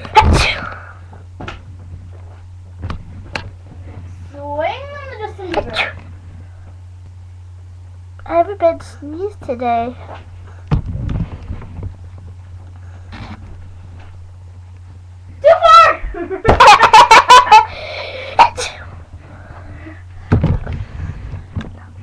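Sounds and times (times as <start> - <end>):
steady low hum: 0.0 - 22.0
person sneezing: 18.2 - 18.9.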